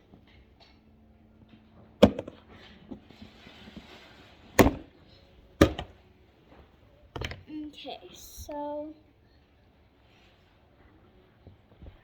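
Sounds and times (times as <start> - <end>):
bin lid clacks: 2.0 - 3.0, 4.6 - 4.9, 5.6 - 6.0.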